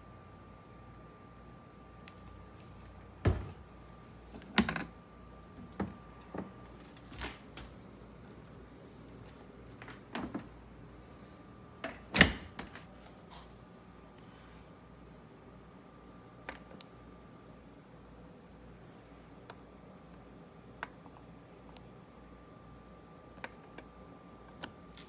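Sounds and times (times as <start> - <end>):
hard objects knocking and clunking: 3.2 - 3.6.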